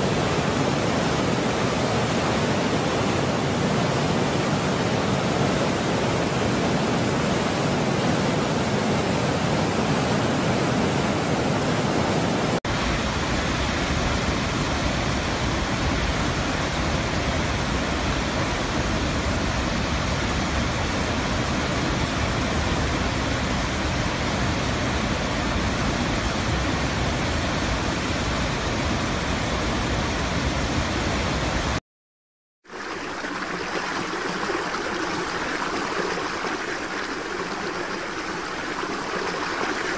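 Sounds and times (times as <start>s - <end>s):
waterfall rushing water: 0.0s - 31.8s, 32.7s - 39.9s
light stream flowing: 32.7s - 39.9s.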